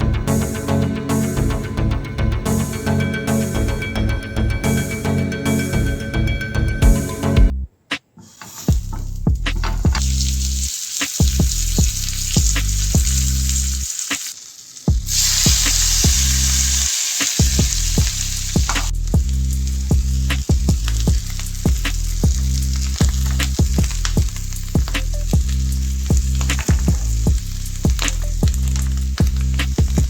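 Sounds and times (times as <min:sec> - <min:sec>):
food sizzling in frying pan: 0:10.0 - 0:18.9.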